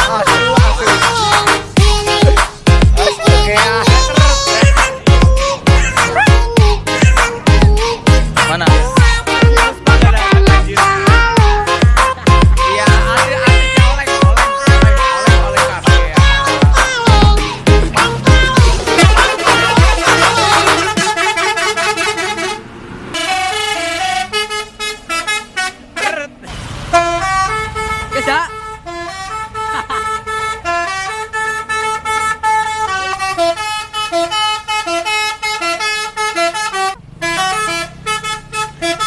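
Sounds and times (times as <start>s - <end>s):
electronic dance music: 0.0s - 21.9s
bus horn playing a tune: 0.0s - 39.0s.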